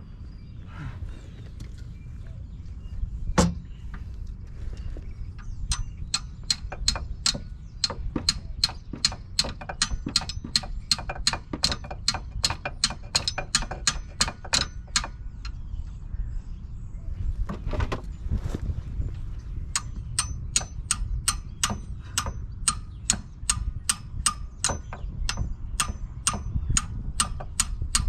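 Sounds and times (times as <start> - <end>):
socket ratchet clicking: 5.7 - 15.6, 19.8 - 28.0.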